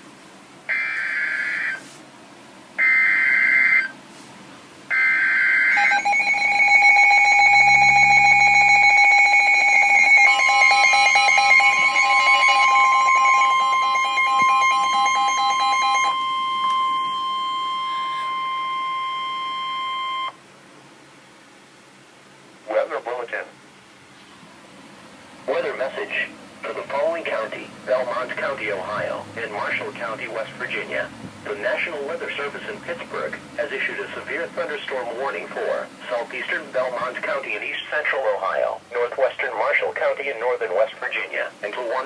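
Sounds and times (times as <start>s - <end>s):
steady alert tones: 4.9s - 20.3s
warbling data tones: 4.9s - 20.3s.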